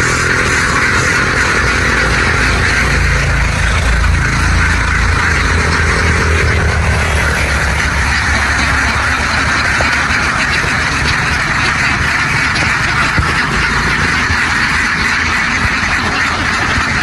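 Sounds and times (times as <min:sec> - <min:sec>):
low steady hum: 0:00.0 - 0:13.1
flock of ducks quacking: 0:00.0 - 0:17.0.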